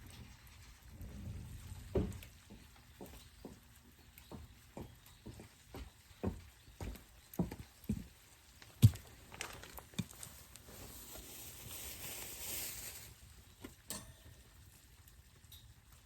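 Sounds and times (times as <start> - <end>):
sharp knocks and clatters: 1.5 - 8.1
soft hiss: 10.2 - 16.0.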